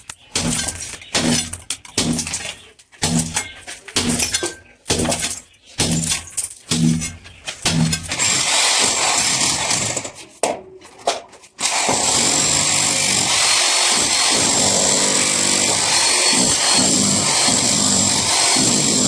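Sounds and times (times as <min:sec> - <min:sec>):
power tool running: 0:08.2 - 0:10.1, 0:11.6 - 0:19.0.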